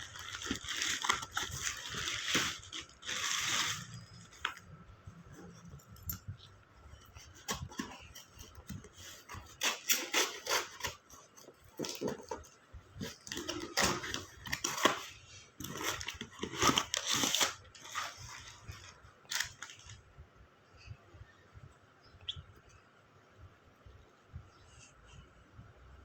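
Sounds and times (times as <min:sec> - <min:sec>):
packaging crinkling and tearing: 0:00.0 - 0:04.6, 0:08.7 - 0:12.4, 0:13.0 - 0:20.0.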